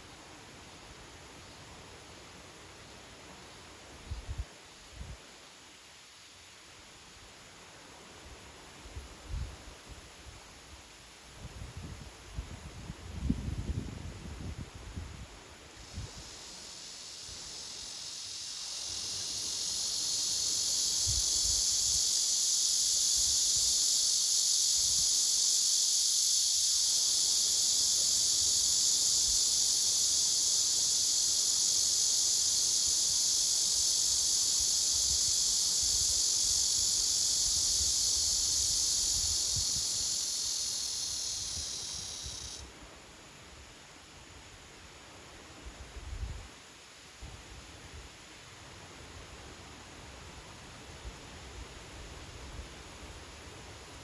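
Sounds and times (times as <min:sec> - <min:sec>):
cicada buzzing: 0:15.8 - 0:42.7.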